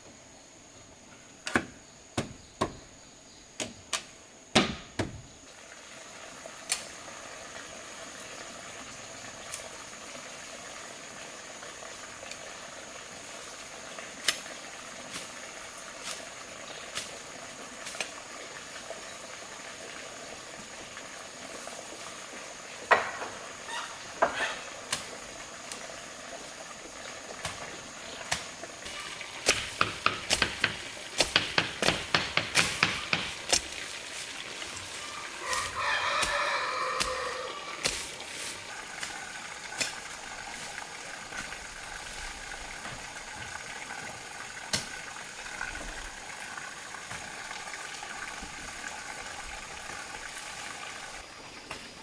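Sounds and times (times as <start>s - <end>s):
steady hiss: 0.0s - 46.2s
high insect trill: 21.1s - 42.2s
sharp knocks: 29.4s - 33.6s.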